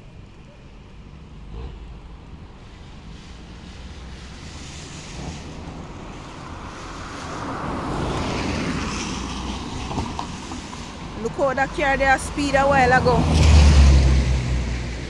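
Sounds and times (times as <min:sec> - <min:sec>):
river water rushing: 0:10.5 - 0:15.0.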